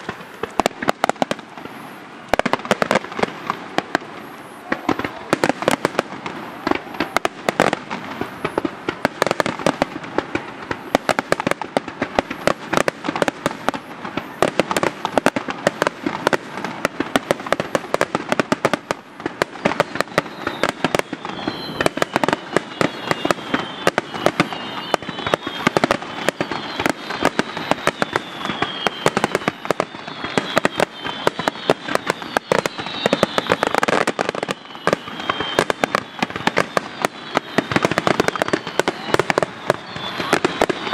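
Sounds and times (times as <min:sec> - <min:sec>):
fireworks bursting: 0:00.0 - 0:40.9
falling whistle tones: 0:19.4 - 0:40.9.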